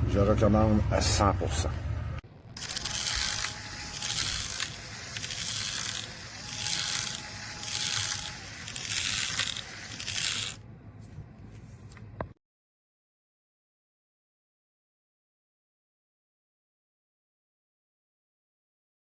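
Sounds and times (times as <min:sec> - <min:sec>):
hammer drill boring into hard material: 0:02.6 - 0:10.6.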